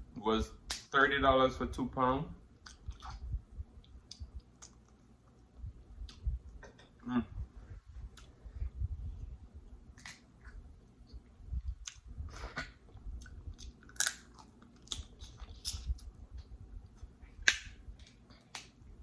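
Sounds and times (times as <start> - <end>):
chewing seafood: 2.6 - 6.6.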